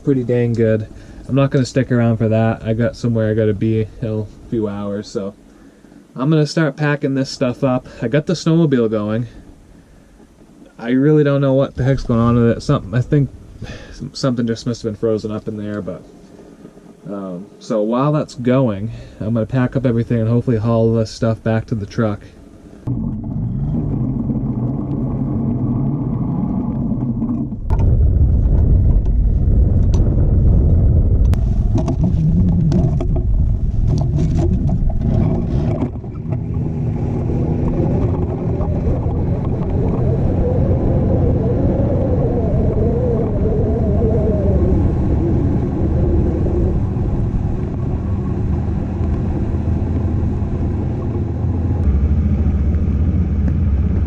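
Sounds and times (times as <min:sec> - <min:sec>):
snowmobile engine running: 0:30.9 - 0:42.0, 0:44.5 - 0:54.0.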